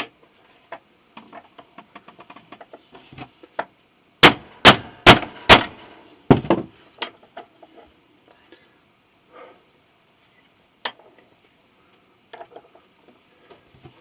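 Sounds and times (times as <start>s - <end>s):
metallic clanks ringing: 4.2s - 5.8s.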